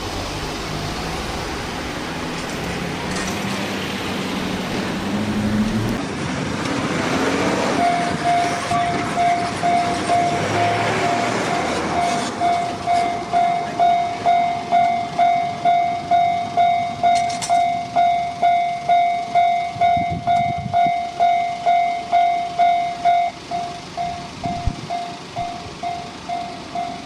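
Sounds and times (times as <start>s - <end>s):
train rumbling past: 0.0s - 27.0s
level crossing alarm ringing: 7.7s - 27.0s.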